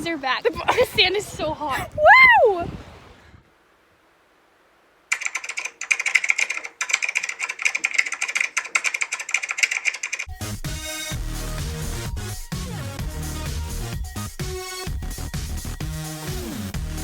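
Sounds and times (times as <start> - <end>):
keyboard typing clicks: 5.1 - 10.3.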